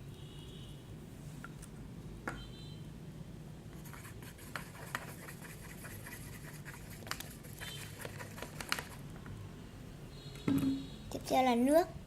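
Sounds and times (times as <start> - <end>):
slime being stirred in a container: 3.8 - 9.0.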